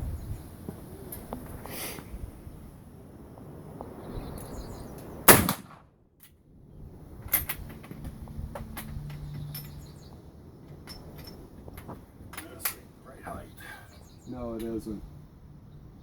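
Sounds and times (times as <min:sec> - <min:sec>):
rifle shot: 0:05.3 - 0:05.9.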